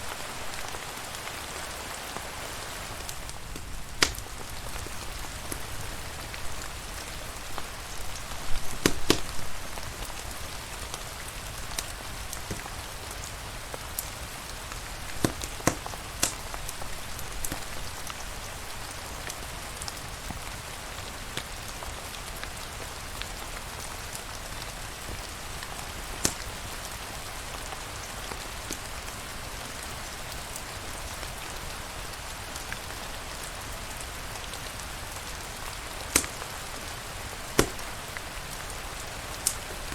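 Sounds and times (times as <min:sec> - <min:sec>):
rain hiss: 0:00.0 - 0:39.9
wood fire pops and crackles: 0:02.1 - 0:20.4, 0:23.2 - 0:29.3, 0:34.0 - 0:39.9.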